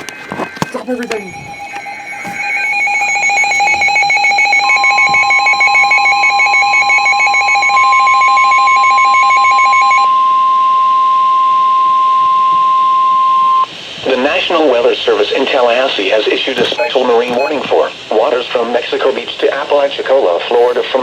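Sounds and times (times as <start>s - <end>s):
steady alarm tone: 0.0s - 13.7s, 16.7s - 17.7s
warbling electronic alarm: 0.0s - 13.7s, 16.7s - 17.6s.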